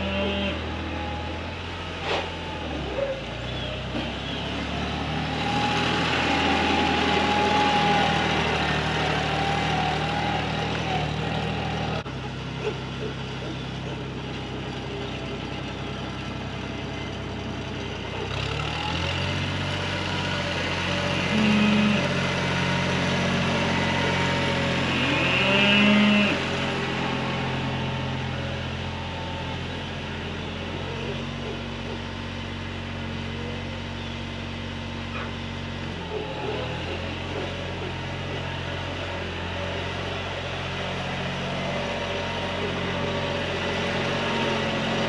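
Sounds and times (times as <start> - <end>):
tractor engine running: 0.0 - 45.0.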